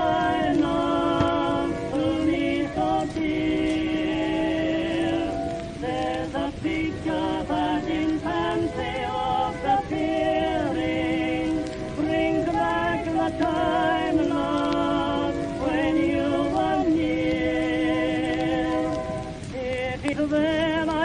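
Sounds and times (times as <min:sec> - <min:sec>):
recording hiss: 0:00.0 - 0:21.0
vocal group singing in harmony: 0:00.0 - 0:21.0.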